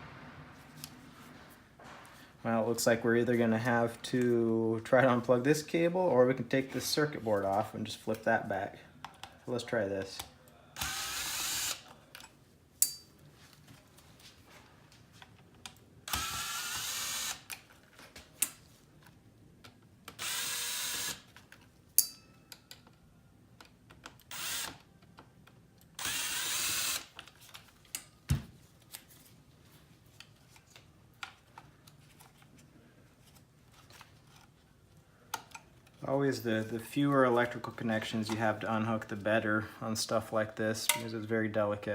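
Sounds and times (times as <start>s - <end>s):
electric screwdriver running: 10.8s - 11.9s, 16.1s - 17.5s, 20.2s - 21.3s, 24.3s - 24.8s, 26.0s - 27.1s.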